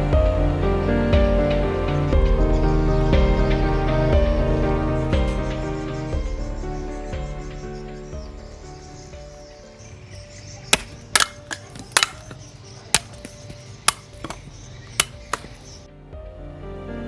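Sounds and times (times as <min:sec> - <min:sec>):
soft background music: 0:00.0 - 0:17.0
knife chopping strikes: 0:10.8 - 0:12.4, 0:13.0 - 0:15.6.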